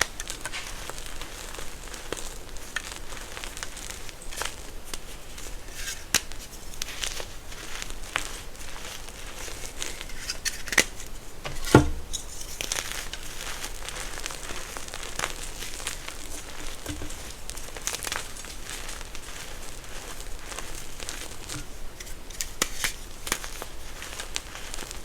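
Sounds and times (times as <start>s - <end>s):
close-up crinkling: 0.0s - 25.0s
thump: 11.5s - 12.1s.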